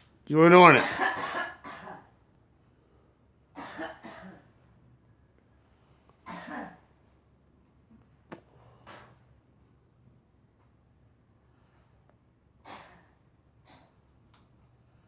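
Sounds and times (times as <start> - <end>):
girl coughing: 0.8 - 2.0, 3.6 - 4.4, 6.3 - 6.8.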